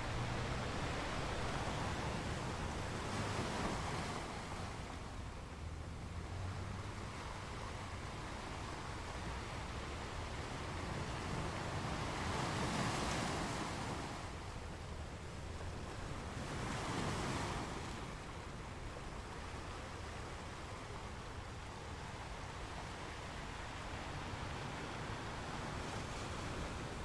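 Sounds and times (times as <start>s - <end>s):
ocean waves washing onto beach: 0.0s - 27.0s.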